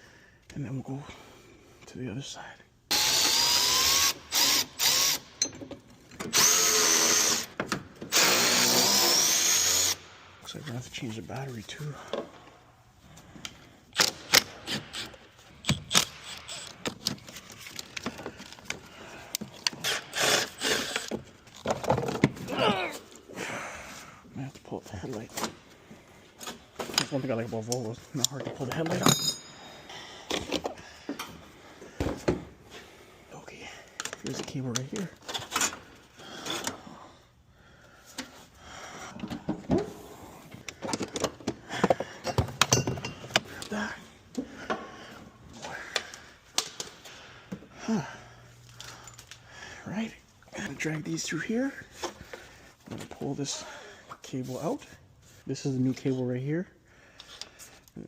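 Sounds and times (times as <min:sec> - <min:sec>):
tools clicking and rattling on parts: 0:02.9 - 0:10.0, 0:13.2 - 0:22.5, 0:26.4 - 0:32.4, 0:33.8 - 0:36.8, 0:39.1 - 0:47.7, 0:48.5 - 0:49.6
hand tools clicking and knocking: 0:14.0 - 0:22.4, 0:40.6 - 0:44.9.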